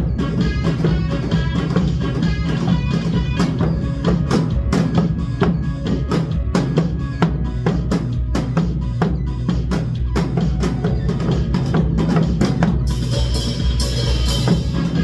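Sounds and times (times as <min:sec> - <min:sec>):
drums struck in steady beat: 0:00.0 - 0:15.0
instrumental trot music: 0:00.0 - 0:15.0.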